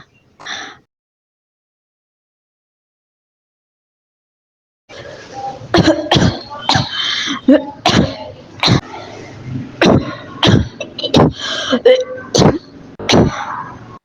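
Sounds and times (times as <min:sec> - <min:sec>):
person coughing: 0:05.7 - 0:08.9, 0:09.8 - 0:13.6.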